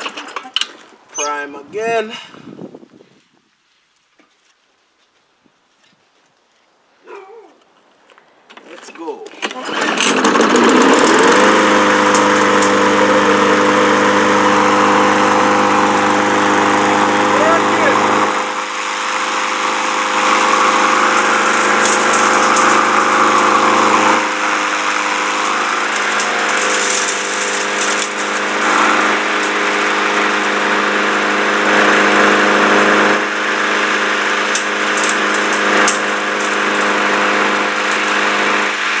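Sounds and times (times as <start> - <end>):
lawn mower engine running: 9.4 - 39.0.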